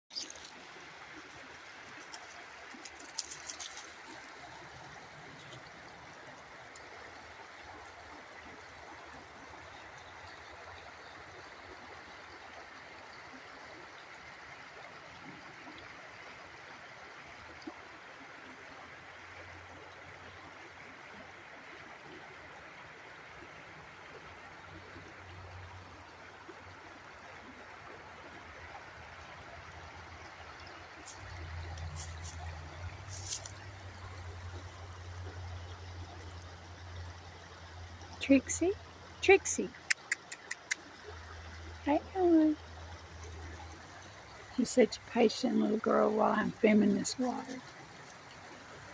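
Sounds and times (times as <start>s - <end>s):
water trickling in a stream: 0.1s - 48.9s
sharp clicks: 39.8s - 40.9s.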